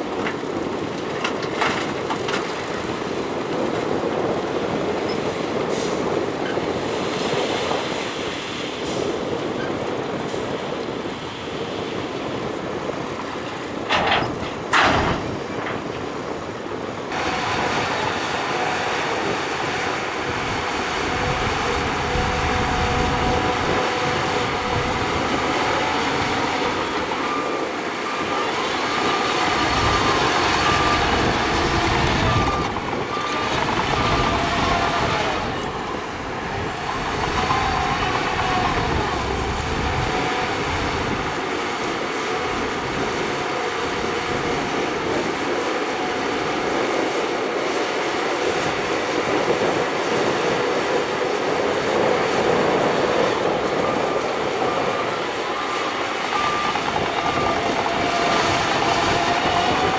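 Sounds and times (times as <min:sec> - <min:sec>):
bulldozer diesel engine running: 0:00.0 - 0:59.9
high-pitched machinery whine: 0:17.1 - 0:59.9.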